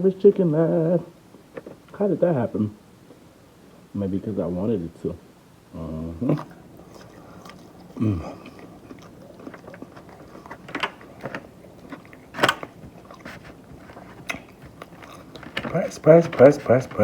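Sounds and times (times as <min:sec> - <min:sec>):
chewing crispy fried chicken: 0:05.8 - 0:17.0.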